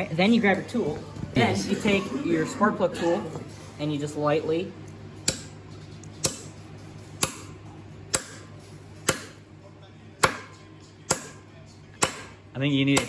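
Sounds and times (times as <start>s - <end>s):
hammer tapping on metal tool: 5.2s - 5.6s, 6.2s - 6.6s, 7.2s - 9.4s, 10.2s - 12.4s.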